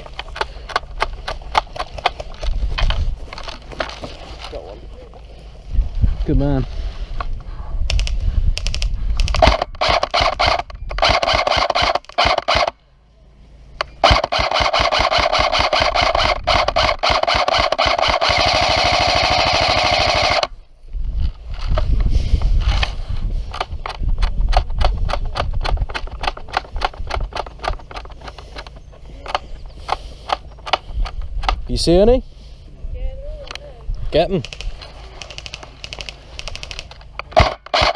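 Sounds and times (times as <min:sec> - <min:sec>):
airsoft gun firing bursts: 0:07.9 - 0:12.8, 0:14.0 - 0:20.6, 0:34.4 - 0:37.9
gun motor and gearbox whine: 0:13.8 - 0:20.5, 0:34.5 - 0:37.9.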